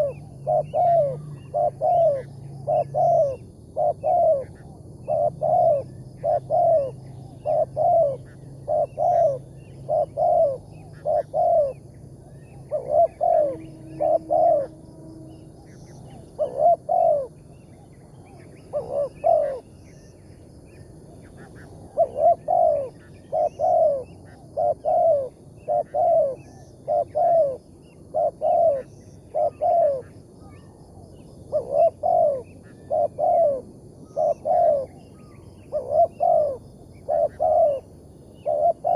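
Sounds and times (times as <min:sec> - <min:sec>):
doves cooing: 0:00.0 - 0:20.2, 0:21.2 - 0:38.9.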